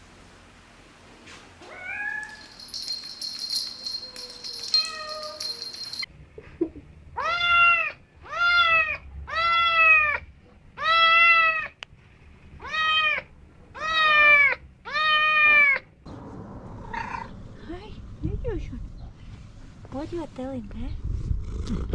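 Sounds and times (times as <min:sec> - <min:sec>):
cat meowing loudly: 0:07.2 - 0:10.2, 0:10.8 - 0:11.8, 0:12.6 - 0:15.8.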